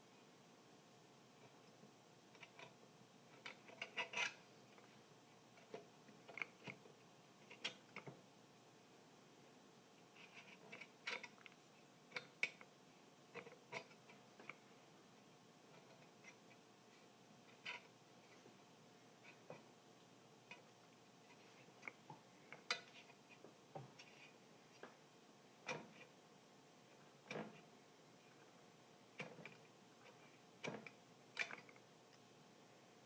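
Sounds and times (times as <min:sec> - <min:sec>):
small tools tapping and scratching: 0:02.3 - 0:05.0, 0:05.6 - 0:08.2, 0:10.2 - 0:12.7, 0:13.3 - 0:14.6.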